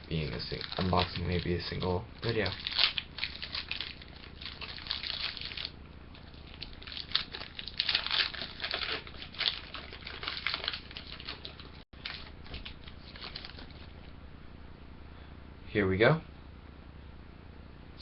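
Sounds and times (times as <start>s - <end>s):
foil wrapper crinkling: 0.0s - 14.1s.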